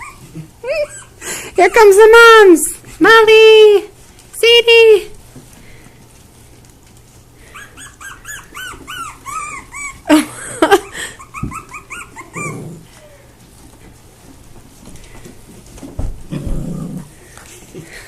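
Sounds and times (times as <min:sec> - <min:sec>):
dog yipping: 0:00.0 - 0:01.2, 0:07.5 - 0:10.1, 0:11.2 - 0:12.7
dogs whining: 0:00.0 - 0:01.2, 0:07.4 - 0:13.3.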